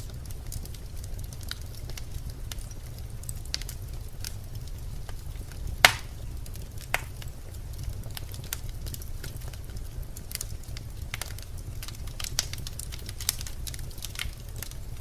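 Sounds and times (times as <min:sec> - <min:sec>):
logs crackling in fireplace: 0:00.0 - 0:15.0
low steady fire rumble: 0:00.0 - 0:15.0
sharp loud pop: 0:05.9 - 0:06.1.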